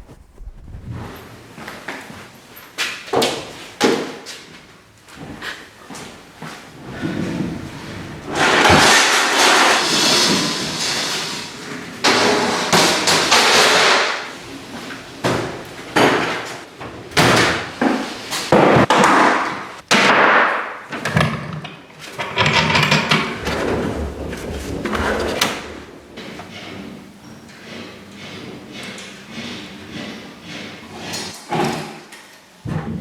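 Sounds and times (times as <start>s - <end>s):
clattering and scraping: 22.2s - 26.9s.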